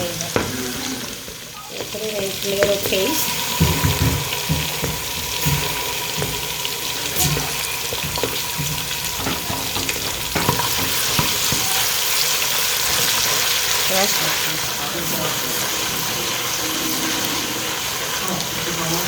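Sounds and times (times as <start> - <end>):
food sizzling in a pot: 0.0 - 19.0
stirring knocks against pot: 2.6 - 12.1.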